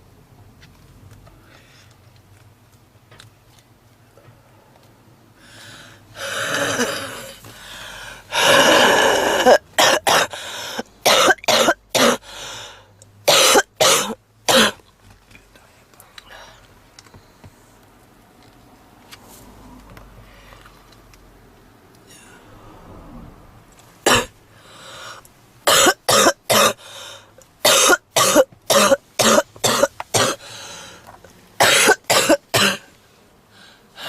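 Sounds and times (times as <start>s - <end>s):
woman coughing: 6.4s - 7.4s, 8.4s - 10.4s, 11.1s - 12.2s, 13.3s - 14.8s, 24.1s - 24.4s, 25.7s - 26.8s, 27.7s - 30.4s, 31.6s - 32.9s.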